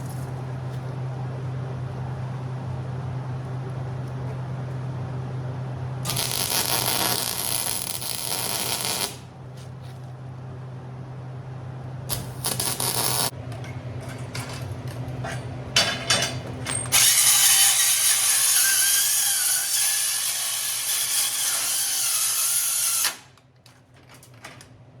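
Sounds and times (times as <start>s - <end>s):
grinder cutting metal: 6.1s - 9.2s, 12.1s - 13.3s, 16.7s - 23.3s.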